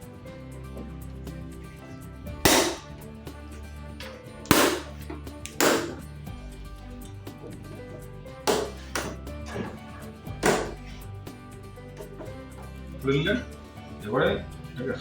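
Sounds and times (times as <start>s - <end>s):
sharp clap-like hits: 2.5s - 3.0s, 4.5s - 6.0s, 8.5s - 9.2s.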